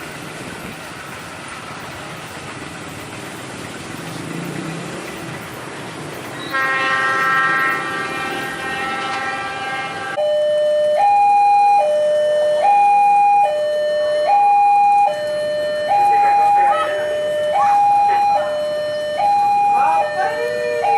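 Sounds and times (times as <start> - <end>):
locomotive horn: 6.4 - 10.2, 19.7 - 20.9
level crossing two-tone alarm: 10.1 - 20.9.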